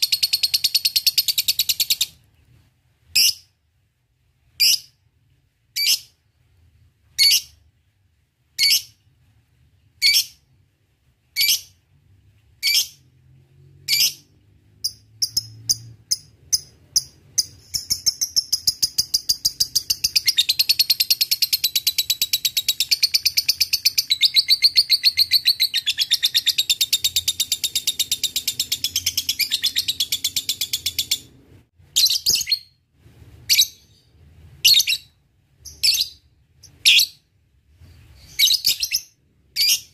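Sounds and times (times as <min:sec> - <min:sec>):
lovebird chirping and trilling: 0:00.0 - 0:02.2, 0:03.1 - 0:03.5, 0:04.6 - 0:05.0, 0:05.7 - 0:06.2, 0:07.1 - 0:07.7, 0:08.6 - 0:09.0, 0:10.0 - 0:10.5, 0:11.3 - 0:11.8, 0:12.6 - 0:13.1, 0:13.8 - 0:32.8, 0:33.5 - 0:37.3, 0:38.2 - 0:39.9.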